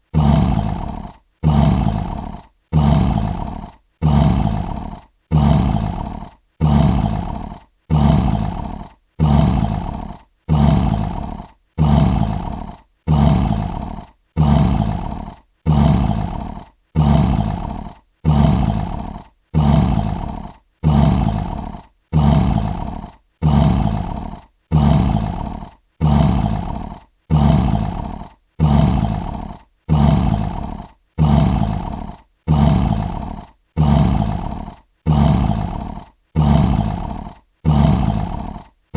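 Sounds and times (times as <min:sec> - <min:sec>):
lion roaring: 0:00.1 - 0:38.8.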